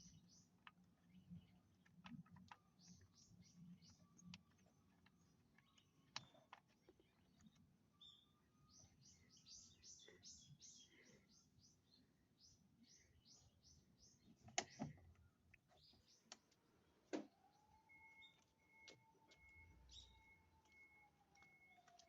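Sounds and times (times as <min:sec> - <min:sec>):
faint bird chirping: 0:00.0 - 0:22.0
faint steady tone: 0:16.6 - 0:22.0.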